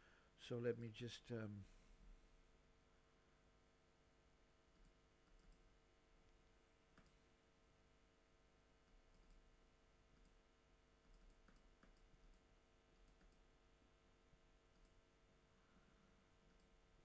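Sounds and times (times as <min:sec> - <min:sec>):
computer mouse clicks: 0:04.7 - 0:05.7, 0:06.9 - 0:07.2, 0:08.8 - 0:09.5, 0:10.1 - 0:10.4, 0:11.0 - 0:13.5, 0:14.7 - 0:15.0, 0:16.5 - 0:16.8.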